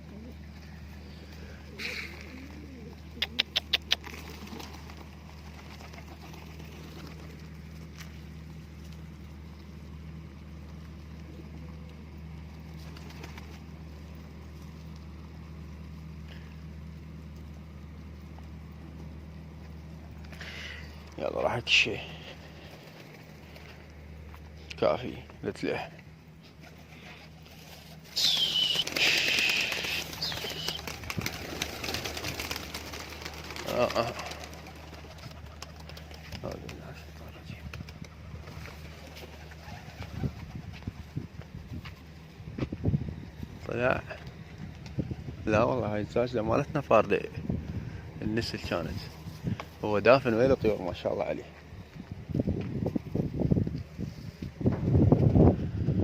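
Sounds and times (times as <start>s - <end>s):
steady low hum: 0.0s - 56.0s
pigeon wings flapping: 1.3s - 8.2s, 10.7s - 15.0s, 22.4s - 23.8s, 26.6s - 41.4s.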